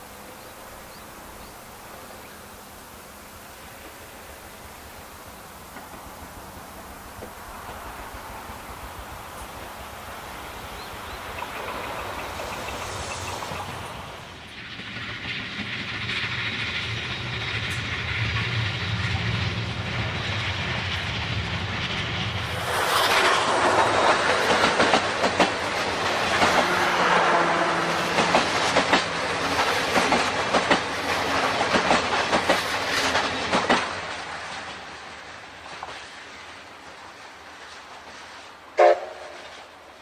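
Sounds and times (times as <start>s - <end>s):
steady hiss: 0.0s - 40.0s
steam locomotive passing: 0.0s - 40.0s
wheels clicking over rail joints: 5.6s - 17.0s, 22.9s - 26.8s, 28.0s - 35.0s.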